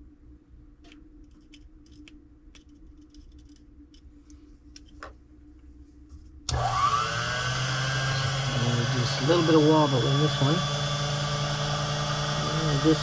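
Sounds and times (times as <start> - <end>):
lathe motor whining: 6.5 - 13.0.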